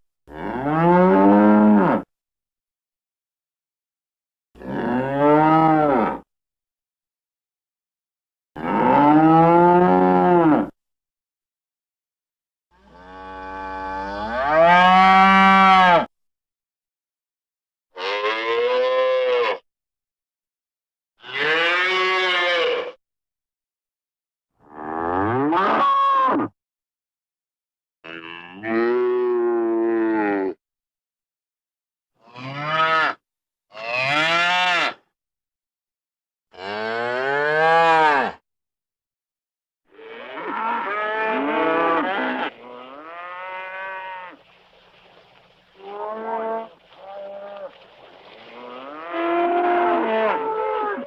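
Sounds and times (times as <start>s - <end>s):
cow mooing: 0.3s - 2.1s, 4.6s - 6.2s, 8.6s - 10.7s, 12.8s - 16.1s, 18.0s - 19.6s, 21.2s - 23.0s, 24.6s - 26.5s, 28.1s - 30.6s, 32.3s - 35.0s, 36.6s - 38.4s, 39.9s - 44.4s, 48.5s - 51.0s
cattle mooing: 21.2s - 23.0s, 32.3s - 35.0s, 36.6s - 38.4s, 39.9s - 44.4s, 48.5s - 51.0s.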